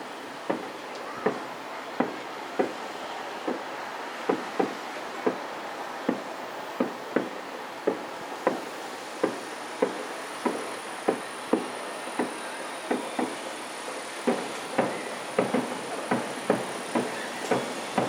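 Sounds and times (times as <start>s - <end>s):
steady background hiss: 0.0s - 18.0s
distant fireworks booms: 4.3s - 5.5s, 6.1s - 13.4s, 14.2s - 18.0s.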